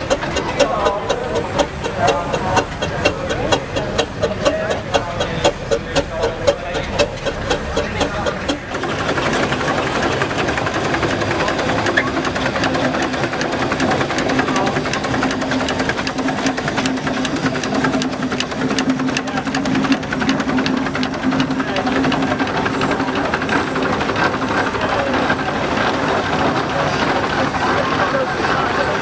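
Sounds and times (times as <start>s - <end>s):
steady low tone: 0.0s - 8.8s
steam engine clattering: 0.0s - 29.0s.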